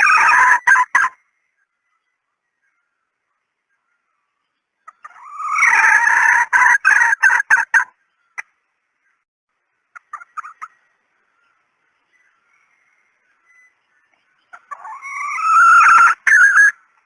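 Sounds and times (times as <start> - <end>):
hen cackling and clucking: 0.0 - 1.2, 4.8 - 8.5, 9.9 - 10.8, 14.5 - 17.0.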